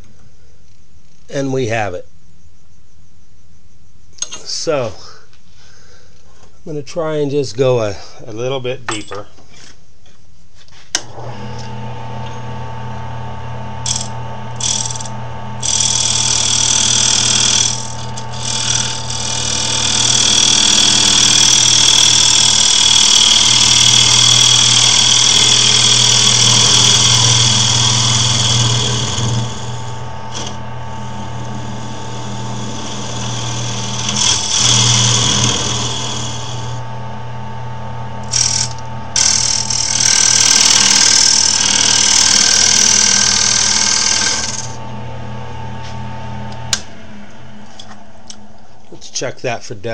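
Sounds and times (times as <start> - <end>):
turning tool cutting wood: 11.0 - 37.1, 38.2 - 45.0
wood lathe motor running: 11.0 - 48.0.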